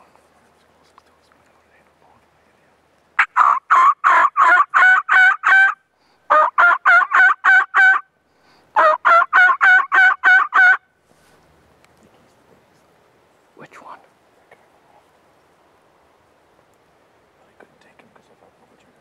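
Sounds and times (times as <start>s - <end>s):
turkey yelping: 3.2s - 8.0s, 8.8s - 10.8s.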